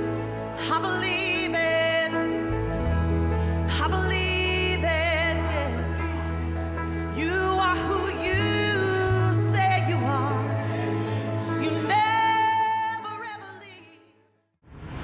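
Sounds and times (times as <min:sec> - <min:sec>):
steady low bass: 0:00.0 - 0:12.1.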